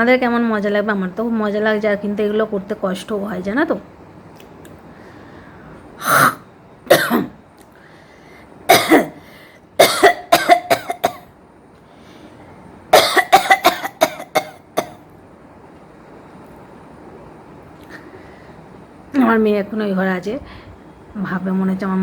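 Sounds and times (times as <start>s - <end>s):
woman coughing: 6.0s - 7.4s, 8.7s - 9.2s, 9.8s - 11.3s, 12.9s - 15.0s.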